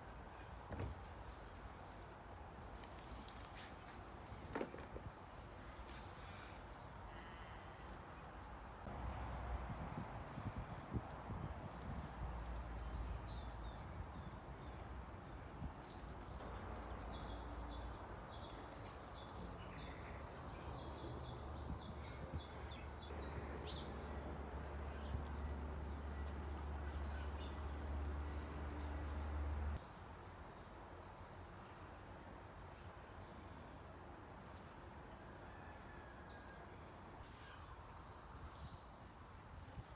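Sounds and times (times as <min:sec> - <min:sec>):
small birds chirping: 0:00.0 - 0:09.1, 0:09.8 - 0:31.2.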